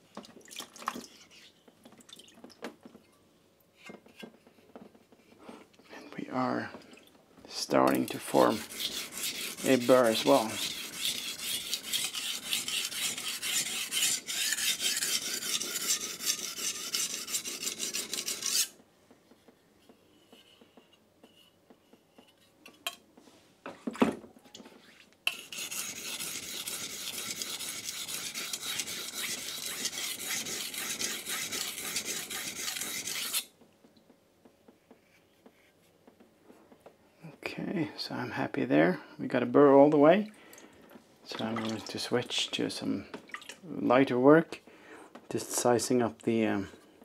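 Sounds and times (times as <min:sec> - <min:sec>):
knife scraping on whetstone: 0:08.0 - 0:18.8, 0:24.8 - 0:33.5.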